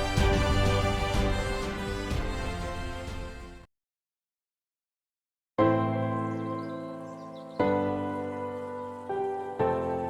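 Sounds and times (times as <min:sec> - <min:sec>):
instrumental background music: 0:00.0 - 0:03.7.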